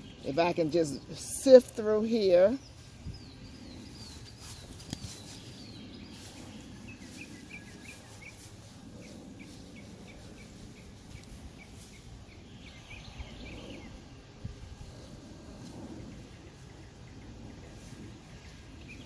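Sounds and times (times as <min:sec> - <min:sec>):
bird chirping: 0:00.0 - 0:14.1
faint outdoor rumble: 0:00.0 - 0:19.0.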